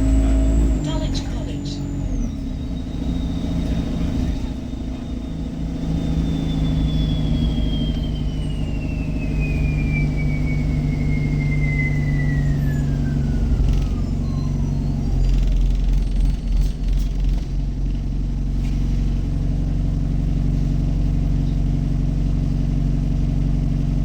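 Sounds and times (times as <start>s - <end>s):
bus drivetrain rumbling: 0.0s - 24.0s
high whine falling in pitch: 6.0s - 14.6s.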